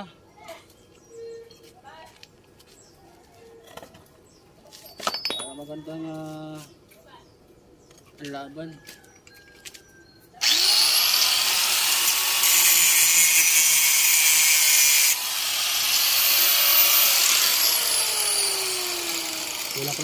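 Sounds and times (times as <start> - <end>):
angle grinder cutting metal: 10.4 - 20.0.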